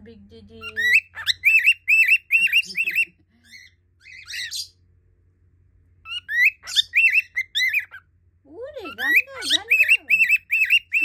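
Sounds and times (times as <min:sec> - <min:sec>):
parrot chirping whistled notes: 0:00.7 - 0:02.9, 0:06.1 - 0:08.0, 0:08.9 - 0:11.0.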